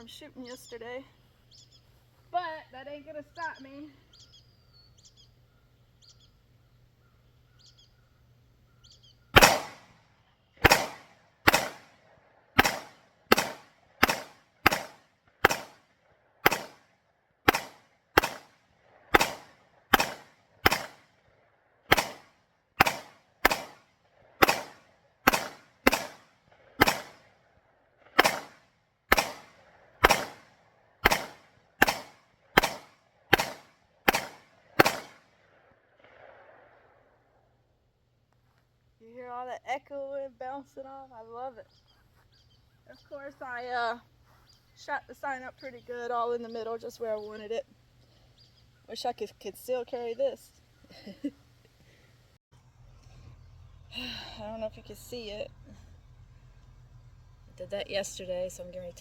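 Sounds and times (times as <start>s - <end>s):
faint bird chirps: 0.0s - 9.4s, 41.0s - 43.6s, 44.3s - 49.0s
gunshots echoing: 9.4s - 10.0s, 10.6s - 16.9s, 17.5s - 21.2s, 21.9s - 27.4s, 28.0s - 37.2s.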